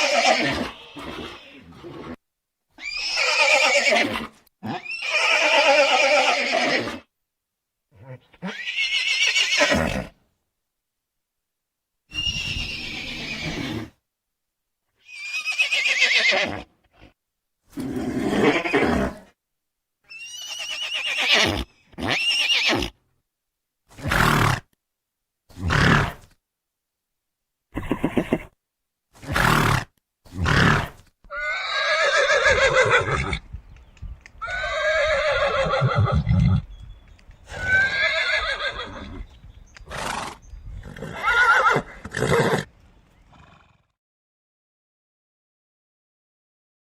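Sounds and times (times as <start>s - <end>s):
horse neighing and whinnying: 0.0s - 2.2s, 2.8s - 7.1s, 7.9s - 10.2s, 12.1s - 14.0s, 15.0s - 19.3s, 20.1s - 23.0s, 24.0s - 24.7s, 25.6s - 26.3s, 27.7s - 28.6s, 29.2s - 33.5s, 34.4s - 36.7s, 37.5s - 42.7s, 43.3s - 43.9s.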